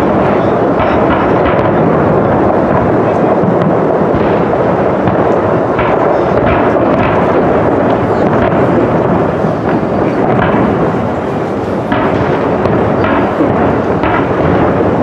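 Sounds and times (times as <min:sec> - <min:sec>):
fireworks booming: 0:00.0 - 0:15.0
fireworks crackling: 0:00.0 - 0:15.0.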